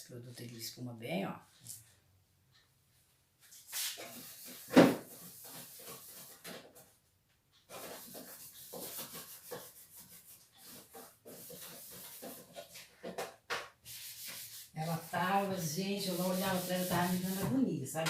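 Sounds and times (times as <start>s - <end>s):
sponge scrubbing: 3.6s - 6.4s, 7.7s - 12.9s, 13.8s - 17.6s.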